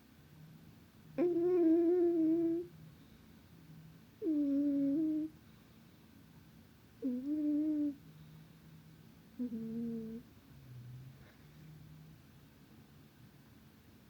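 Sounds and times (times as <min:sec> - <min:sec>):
cat snoring: 0:01.2 - 0:02.7, 0:04.2 - 0:05.3, 0:07.0 - 0:08.0, 0:09.4 - 0:10.2.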